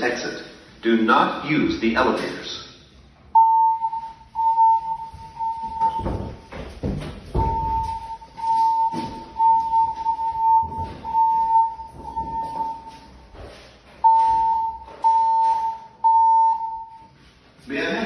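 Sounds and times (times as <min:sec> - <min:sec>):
fire alarm high beep: 0:03.3 - 0:06.5, 0:07.4 - 0:13.1, 0:14.0 - 0:17.2.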